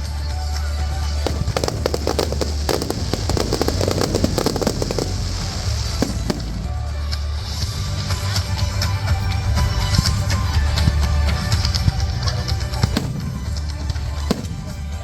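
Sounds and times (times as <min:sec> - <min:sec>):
background music: 0:00.0 - 0:15.0
fireworks crackling: 0:00.6 - 0:08.3, 0:10.7 - 0:15.0
fireworks bangs: 0:00.9 - 0:07.6, 0:11.6 - 0:15.0.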